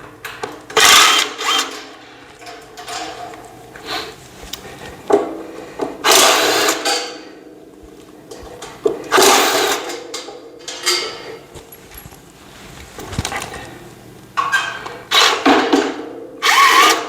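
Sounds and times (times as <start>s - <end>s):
cordless drill running: 0.8s - 1.9s, 6.1s - 6.8s, 15.1s - 15.4s, 16.4s - 17.0s.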